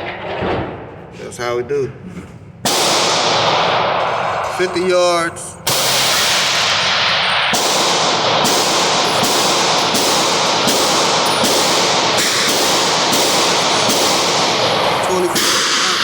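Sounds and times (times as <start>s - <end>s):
static hiss: 11.8s - 16.0s.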